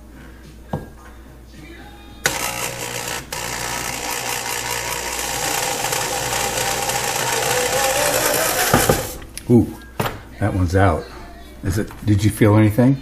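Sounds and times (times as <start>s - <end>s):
electric drill running: 2.2s - 9.2s.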